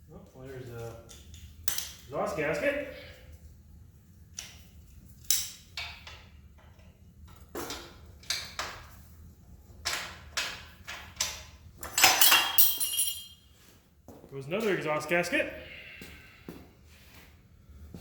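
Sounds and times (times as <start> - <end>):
ringing metallic clank: 12.0 - 13.4.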